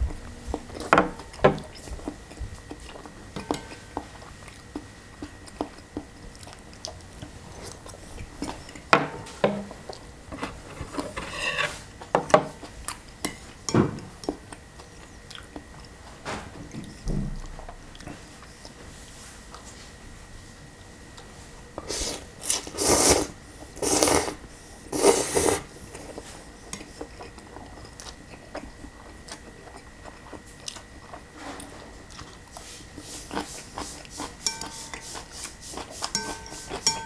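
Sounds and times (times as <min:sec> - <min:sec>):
utensils clinking on a bowl: 0:03.3 - 0:04.0, 0:34.3 - 0:35.4, 0:36.0 - 0:37.0
chewing: 0:14.2 - 0:16.0, 0:25.0 - 0:32.7.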